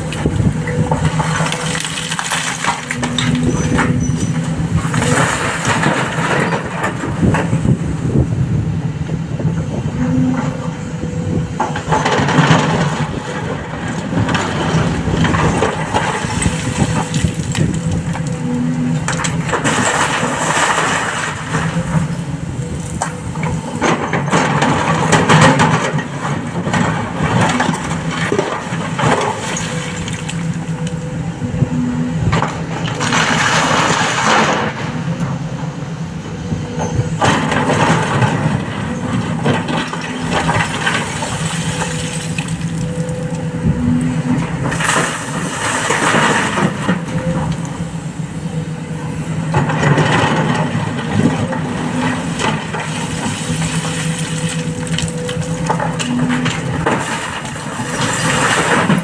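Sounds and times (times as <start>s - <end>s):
diesel engine droning: 0.0s - 59.0s
rock and stone crashing: 1.0s - 3.3s.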